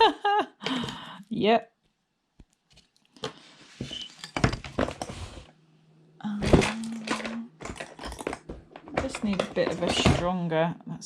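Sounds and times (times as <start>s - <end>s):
tools knocking on work surface: 6.7s - 10.4s.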